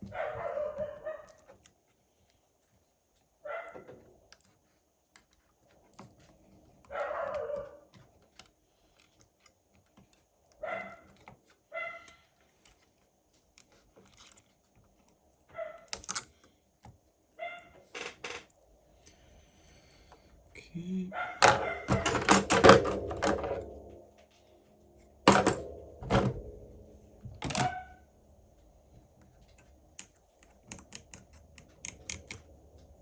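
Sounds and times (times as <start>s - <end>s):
small tools clicking and tapping: 29.2s - 33.0s.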